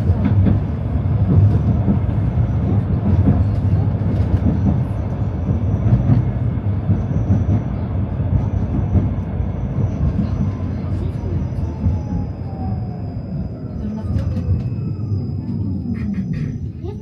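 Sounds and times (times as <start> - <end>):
tram rumbling on rails: 0.0 - 17.0.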